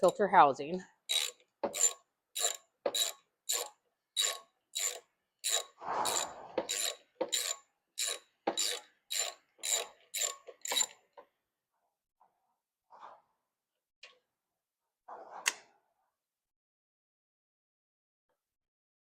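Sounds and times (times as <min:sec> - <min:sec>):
socket ratchet clicking: 0:01.1 - 0:11.0.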